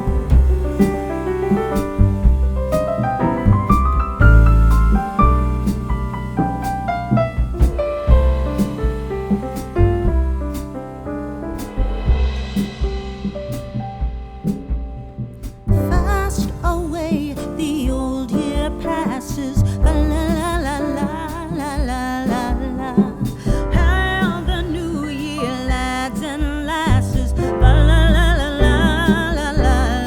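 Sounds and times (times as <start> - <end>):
music with steady bass: 0.0 - 30.0
person singing: 15.9 - 30.0.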